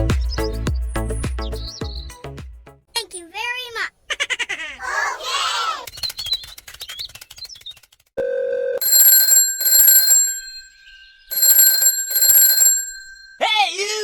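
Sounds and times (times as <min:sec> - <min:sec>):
telephone double rings: 0:08.8 - 0:13.5.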